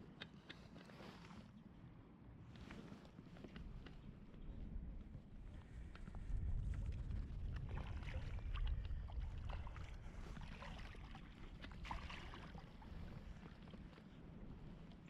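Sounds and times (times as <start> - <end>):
wind rumble on microphone: 1.6 - 15.0
creek water splashing: 10.6 - 13.4.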